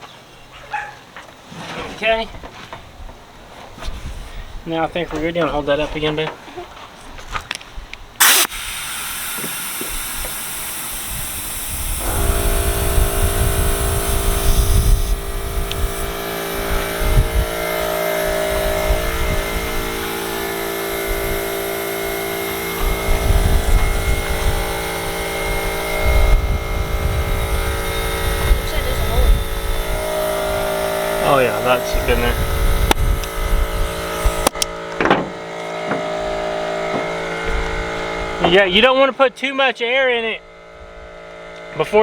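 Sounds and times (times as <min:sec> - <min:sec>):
compressed air hissing into tube: 0:08.2 - 0:34.5
air compressor humming: 0:08.2 - 0:42.0.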